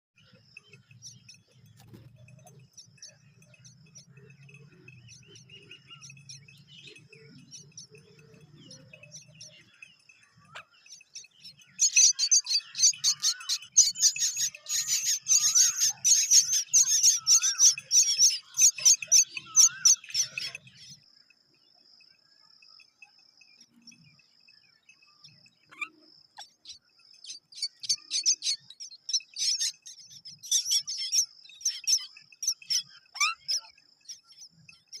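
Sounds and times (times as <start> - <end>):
chicks begging calls: 11.8 - 20.7.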